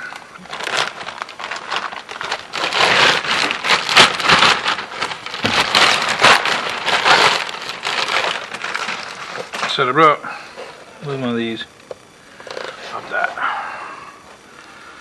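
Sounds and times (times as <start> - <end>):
crackling and rustling material: 0.0 - 11.0.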